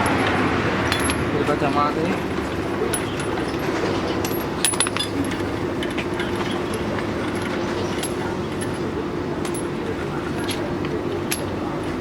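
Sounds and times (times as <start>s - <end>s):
steady mechanical hum: 0.0s - 12.0s
small metal pieces clinking: 4.2s - 8.8s.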